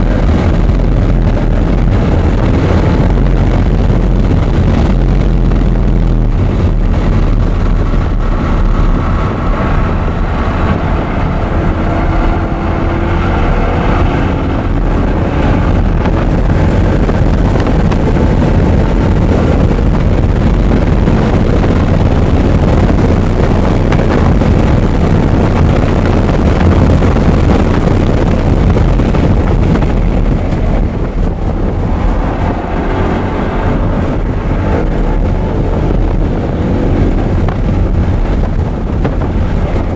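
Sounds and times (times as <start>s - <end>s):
sports car engine accelerating: 0.0s - 39.9s
wind and road noise: 0.0s - 39.9s.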